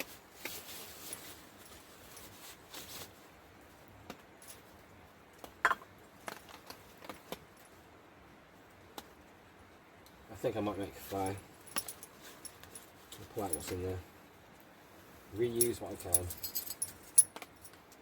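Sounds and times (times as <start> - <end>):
rustling: 0.0 - 4.8, 10.8 - 17.9.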